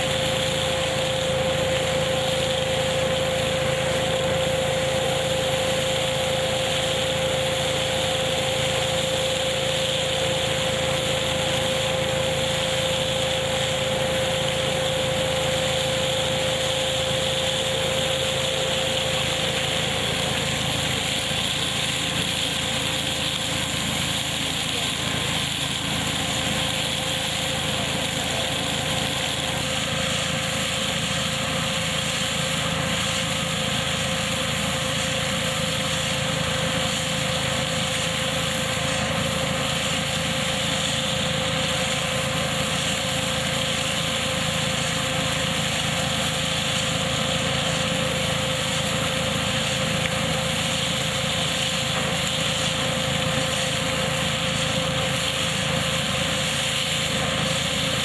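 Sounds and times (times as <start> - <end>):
machine whine and hiss: 0.0 - 58.0
tractor engine: 10.1 - 58.0.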